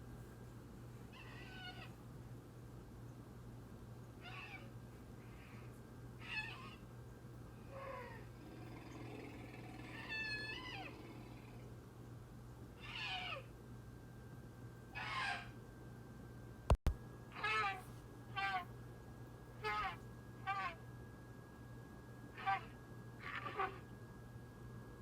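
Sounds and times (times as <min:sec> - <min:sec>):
steady low hum: 0:00.0 - 0:25.0
high animal cries sliding down: 0:19.6 - 0:20.8, 0:22.4 - 0:23.8.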